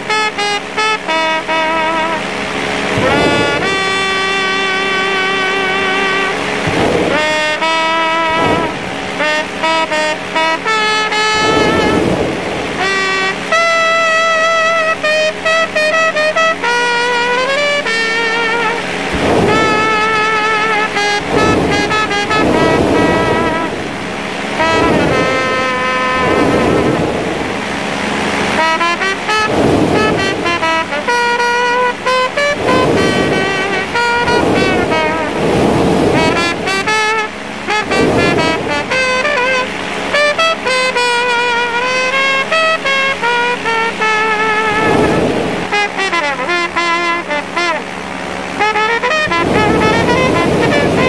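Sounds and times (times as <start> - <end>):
trumpet playing jazz melody: 0.0 - 51.0.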